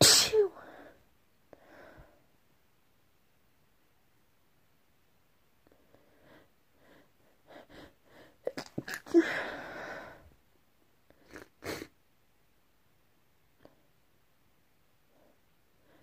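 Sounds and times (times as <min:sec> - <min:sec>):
person sneezing: 0:00.0 - 0:00.6, 0:08.5 - 0:09.6.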